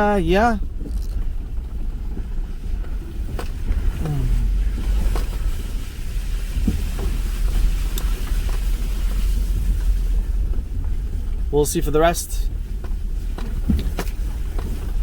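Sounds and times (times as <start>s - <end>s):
car driving on dirt trail: 0.0s - 15.0s
knocks and rattles from bumps: 12.8s - 15.0s.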